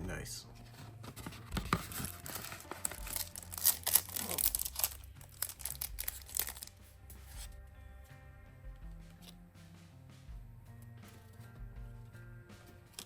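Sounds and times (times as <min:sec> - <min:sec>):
soft background music: 0:00.0 - 0:13.0
packaging tearing and crinkling: 0:01.2 - 0:06.8.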